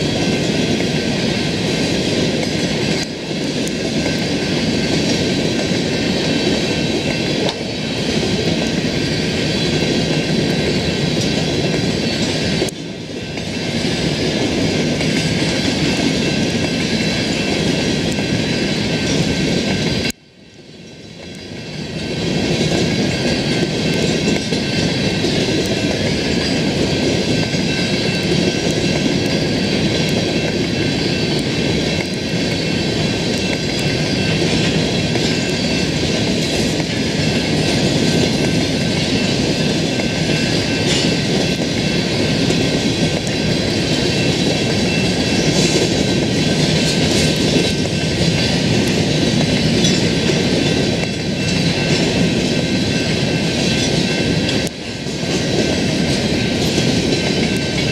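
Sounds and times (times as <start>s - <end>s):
train wheels clattering on rails: 0.0s - 57.9s
high ringing tones: 22.9s - 47.1s.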